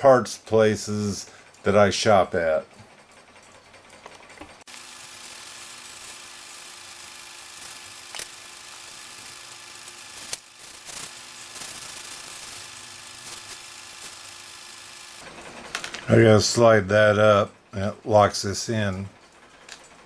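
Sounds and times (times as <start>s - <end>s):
motor whirring and hissing: 4.6s - 15.3s
sharp clicks: 5.1s - 15.2s.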